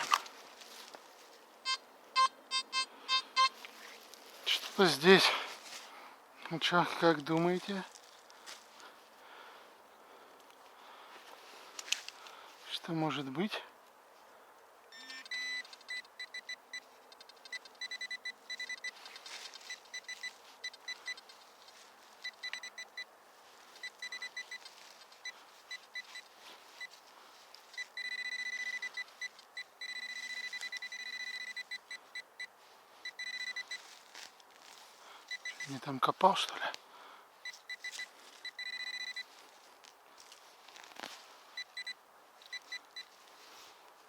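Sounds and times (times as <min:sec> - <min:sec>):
rapid high-pitched beeps: 0:15.0 - 0:19.0, 0:19.6 - 0:21.3, 0:22.2 - 0:23.1, 0:23.8 - 0:26.9, 0:27.8 - 0:33.8, 0:35.3 - 0:35.8, 0:37.4 - 0:39.3.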